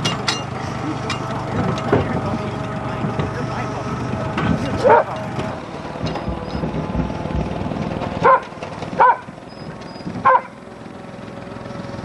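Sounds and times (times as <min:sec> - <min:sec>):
dog barking: 0:04.8 - 0:05.1, 0:08.2 - 0:09.3, 0:10.2 - 0:10.6.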